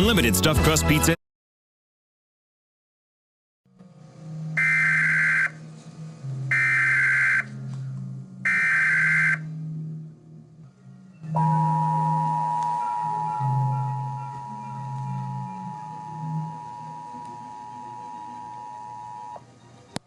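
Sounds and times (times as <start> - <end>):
low steady hum: 3.8 - 20.0
buzzing data bursts: 4.5 - 5.6, 6.4 - 7.5, 8.4 - 9.5, 12.2 - 19.4
two-tone attention signal: 4.5 - 7.6, 8.4 - 9.5, 11.3 - 19.4.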